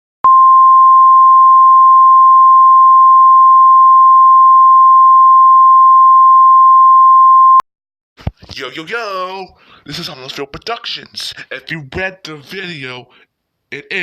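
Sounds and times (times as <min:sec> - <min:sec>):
steady sine tone: 0:00.3 - 0:07.6.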